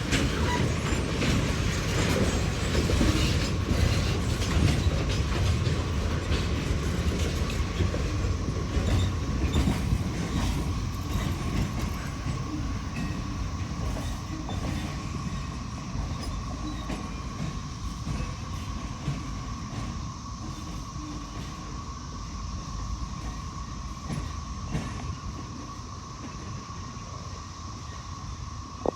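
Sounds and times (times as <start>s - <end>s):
wheels clicking over rail joints: 0.0s - 21.7s
freight train rumbling: 0.0s - 28.9s.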